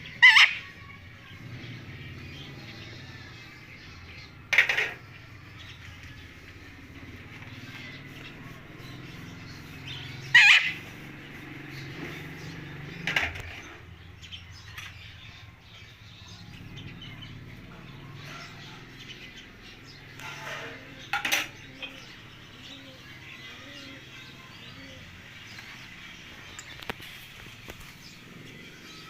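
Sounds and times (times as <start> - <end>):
parrot chattering: 0.2 - 0.7, 10.3 - 10.9
parrot squawks: 0.2 - 0.7, 10.3 - 10.9.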